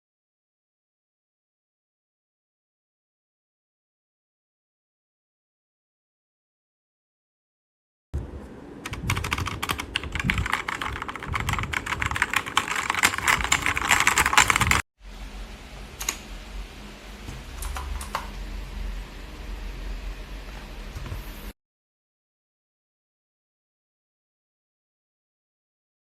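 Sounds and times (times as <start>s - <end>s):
low hum: 8.2s - 21.5s
mechanical keyboard typing: 8.8s - 14.8s.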